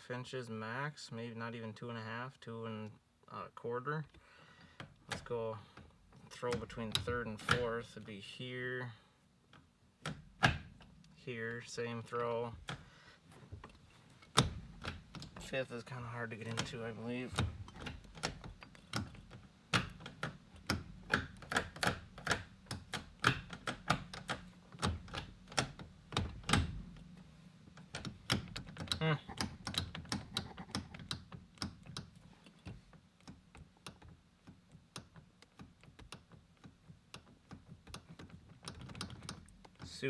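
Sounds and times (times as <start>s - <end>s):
sharp clicks and taps: 16.3s - 26.8s, 27.8s - 40.0s.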